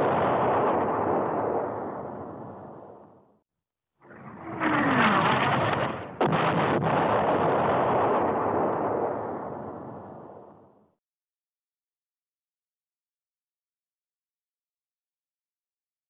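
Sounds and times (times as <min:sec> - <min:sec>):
explosion blast: 0:00.0 - 0:03.1, 0:04.8 - 0:10.6.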